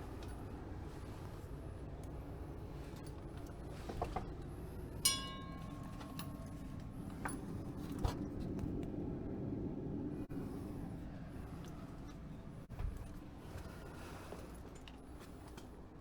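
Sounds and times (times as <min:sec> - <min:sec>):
low background rumble: 0:00.0 - 0:16.0
sharp ringing clink: 0:05.0 - 0:06.5.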